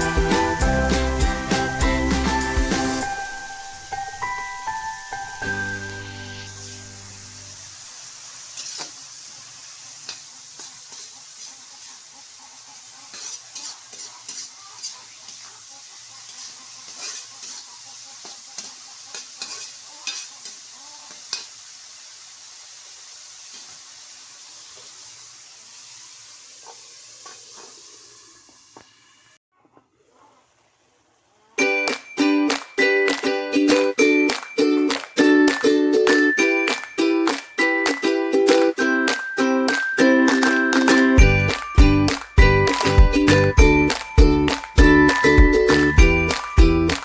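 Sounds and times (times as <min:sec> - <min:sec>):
stir-fry sizzling in a pan: 0:00.0 - 0:29.4, 0:31.6 - 0:47.0
spatula scraping a pan: 0:08.5 - 0:21.6.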